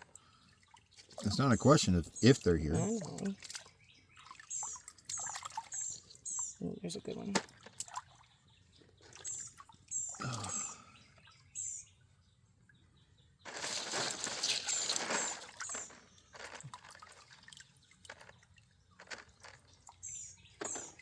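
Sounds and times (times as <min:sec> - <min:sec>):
water splashing: 0:00.0 - 0:08.4, 0:09.0 - 0:10.9, 0:13.5 - 0:20.0
water pouring through sifter: 0:00.5 - 0:03.7, 0:13.5 - 0:20.0.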